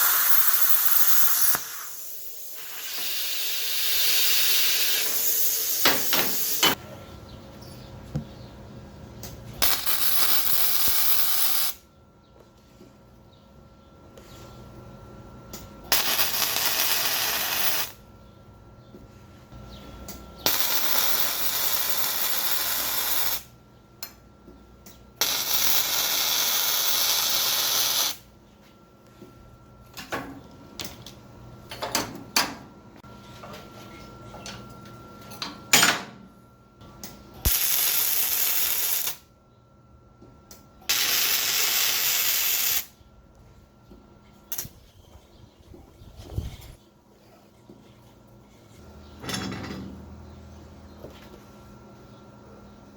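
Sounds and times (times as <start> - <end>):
welder crackling and hissing: 0.0 - 6.8, 9.6 - 11.8, 15.9 - 18.0, 20.4 - 23.5, 25.2 - 28.3, 37.4 - 39.2, 40.9 - 43.0.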